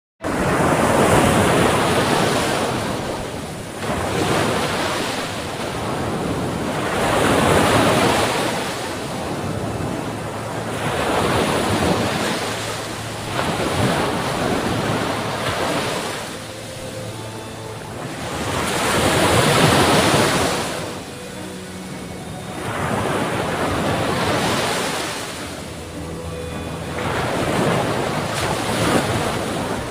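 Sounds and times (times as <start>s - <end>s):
sea waves breaking on shore: 0.2s - 29.9s.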